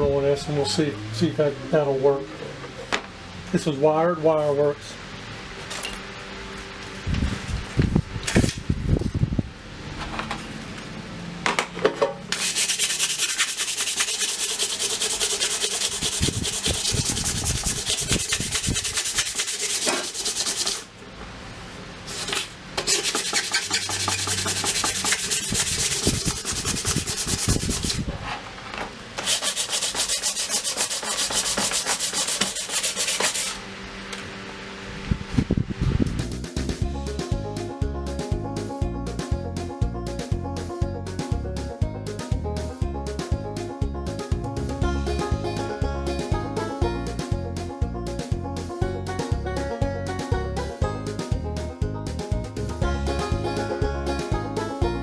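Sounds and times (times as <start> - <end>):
sandpaper rasping on metal: 12.3 - 20.9, 22.1 - 28.1, 29.2 - 33.6.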